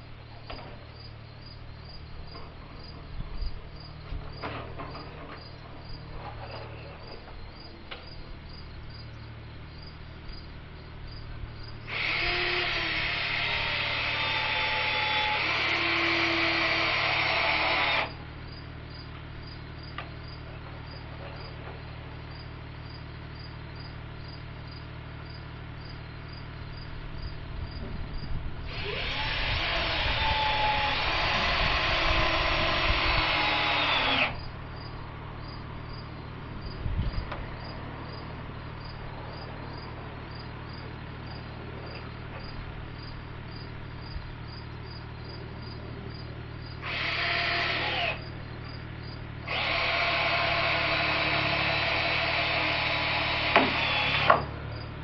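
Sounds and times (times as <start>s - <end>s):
crickets chirping: 0.1s - 55.0s
power drill running: 11.9s - 18.2s, 28.7s - 34.5s, 46.8s - 48.3s, 49.4s - 54.5s.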